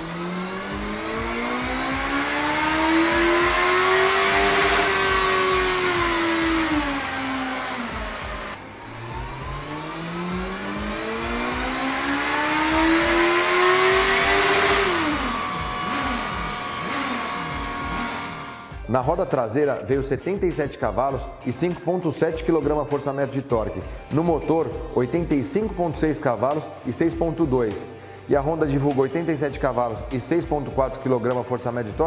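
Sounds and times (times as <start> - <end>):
motorcycle engine revving: 0.0 - 18.9.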